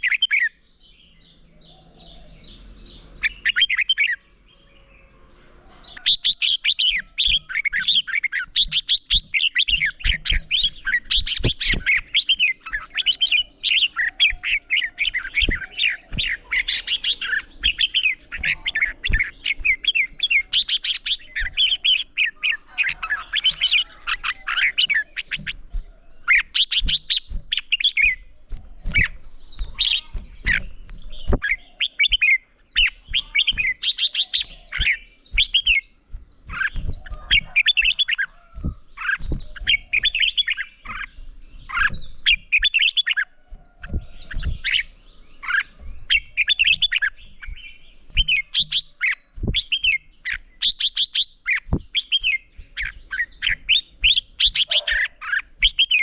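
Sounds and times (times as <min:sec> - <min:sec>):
bulbul singing: 0:00.0 - 0:56.0.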